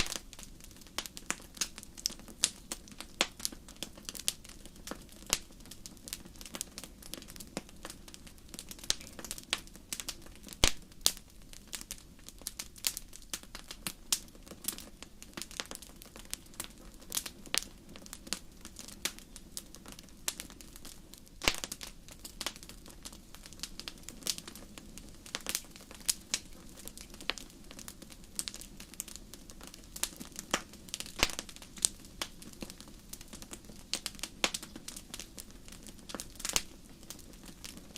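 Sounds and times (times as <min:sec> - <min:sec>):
fire crackling: 0:00.0 - 0:37.9
low rush of flames: 0:00.0 - 0:37.9.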